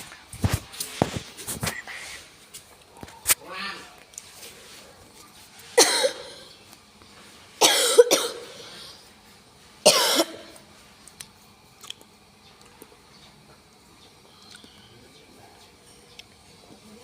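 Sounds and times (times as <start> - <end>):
person coughing: 5.8 - 6.5, 7.6 - 8.6, 9.8 - 10.6.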